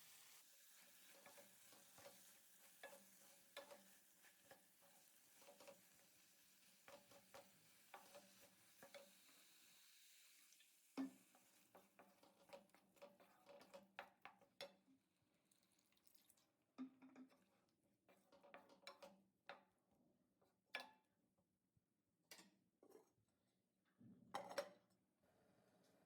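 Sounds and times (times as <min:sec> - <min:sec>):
spatula stirring in frying pan: 0:00.0 - 0:15.4, 0:16.0 - 0:19.7.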